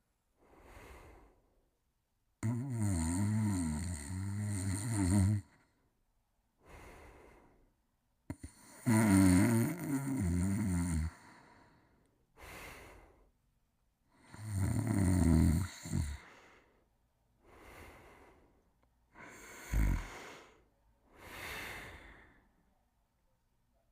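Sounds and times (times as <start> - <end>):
person snoring: 2.4 - 5.6, 8.3 - 11.8, 14.2 - 16.6, 19.1 - 22.4.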